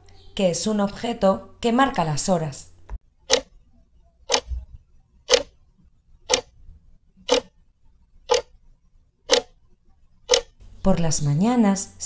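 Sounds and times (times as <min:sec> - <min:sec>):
clock ticking: 0:03.2 - 0:03.5, 0:04.3 - 0:04.6, 0:05.3 - 0:05.5, 0:06.3 - 0:06.5, 0:07.2 - 0:07.6, 0:08.3 - 0:08.6, 0:09.3 - 0:09.6, 0:10.3 - 0:10.6.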